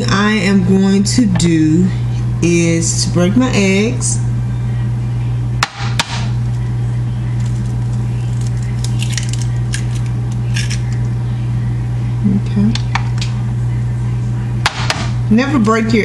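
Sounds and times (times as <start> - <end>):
low electrical hum: 0.0 - 16.0
eggshells crackling apart: 7.4 - 11.2.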